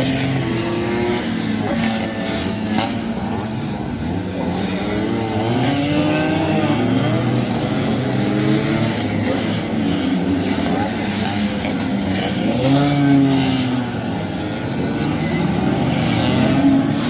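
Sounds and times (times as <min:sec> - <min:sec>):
scooter engines passing at high revs: 0:00.0 - 0:17.0.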